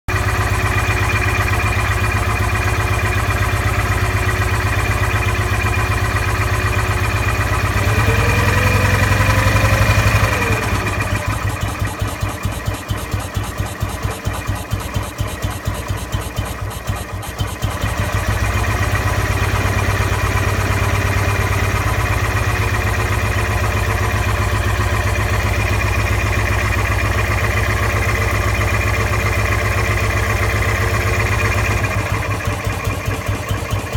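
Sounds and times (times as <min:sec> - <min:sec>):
motorcycle engine idling: 0:00.1 - 0:33.9
rising whine: 0:07.8 - 0:11.2.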